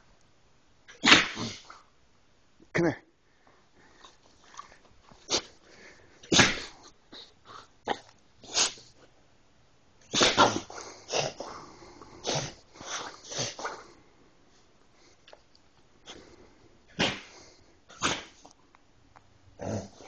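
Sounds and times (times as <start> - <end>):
dog sneezing: 0.9 - 1.8, 5.3 - 5.5, 6.2 - 6.8, 7.9 - 8.9, 10.1 - 11.5, 12.2 - 13.8, 16.9 - 18.5.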